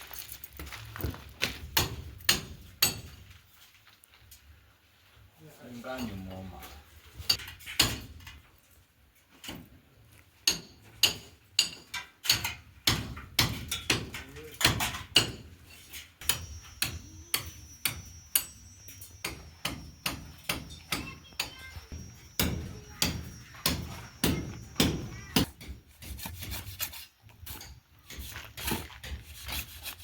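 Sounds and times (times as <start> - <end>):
faint high whine: 16.2 - 25.4
hand tool knocking: 19.2 - 25.8.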